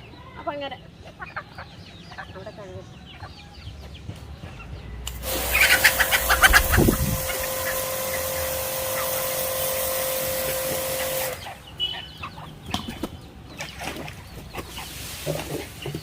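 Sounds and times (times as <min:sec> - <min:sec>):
chickens clucking: 0:00.0 - 0:16.0
pressure washer running: 0:05.1 - 0:11.8.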